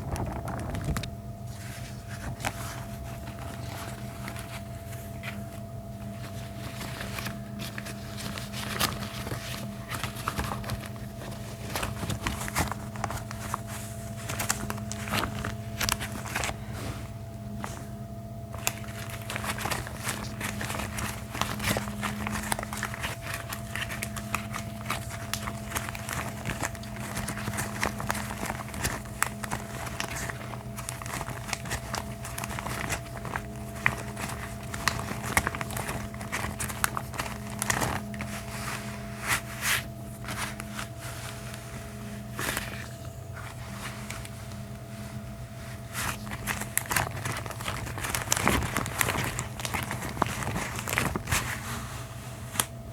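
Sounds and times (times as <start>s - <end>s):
gloved hands rubbing and crinkling: 0.0s - 52.9s
low electrical hum: 0.0s - 52.9s.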